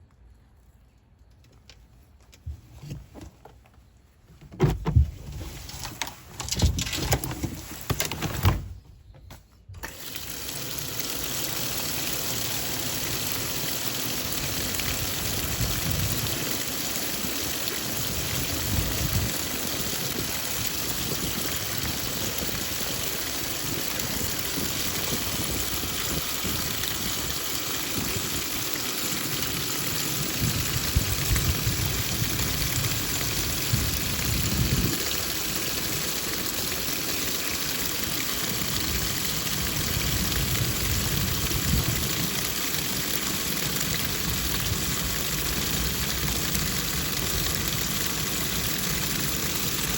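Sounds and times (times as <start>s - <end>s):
knocks and clunks: 2.3s - 9.7s
water pouring from tap into tub: 9.8s - 49.9s.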